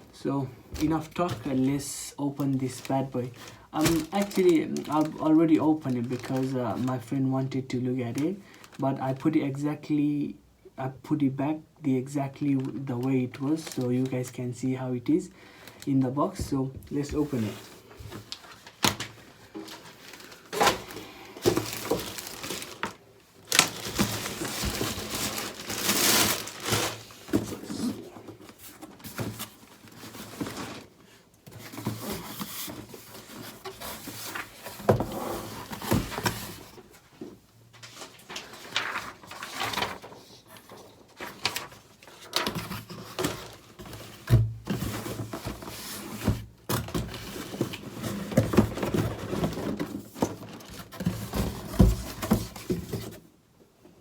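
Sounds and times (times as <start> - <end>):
cardboard box rustling: 2.5 - 6.6, 16.4 - 53.2.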